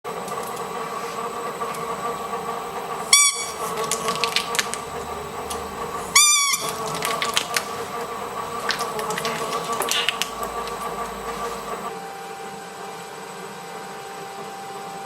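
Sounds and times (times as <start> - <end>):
steady hum: 0.1 - 14.7
squeaky dog toy squeaking: 3.1 - 3.6, 6.2 - 6.7.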